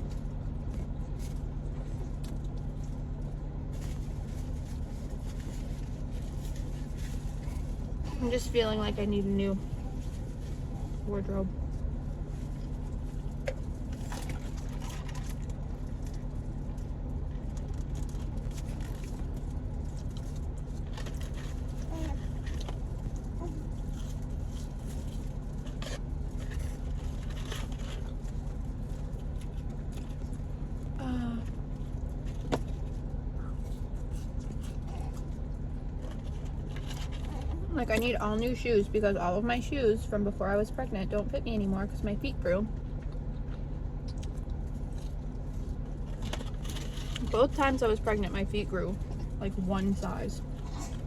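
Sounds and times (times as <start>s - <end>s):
eating clicks and rustles: 12.2s - 38.2s.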